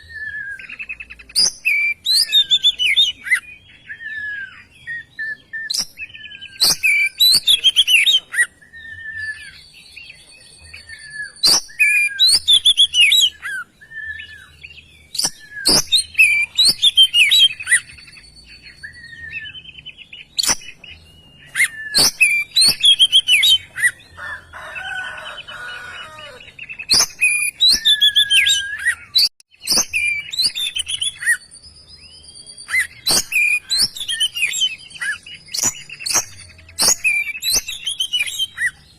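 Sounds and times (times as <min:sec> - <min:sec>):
bird singing whistles and trills: 0:00.0 - 0:38.9.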